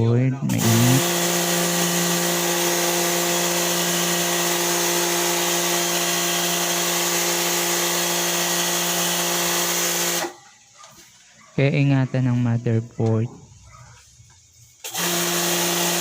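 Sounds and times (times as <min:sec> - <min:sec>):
pressure washer motor humming: 0:00.4 - 0:10.4, 0:14.8 - 0:16.0.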